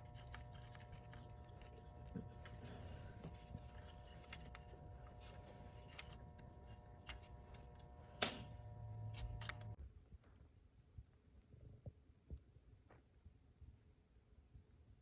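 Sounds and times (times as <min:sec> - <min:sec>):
low steady hum: 0:00.0 - 0:12.6.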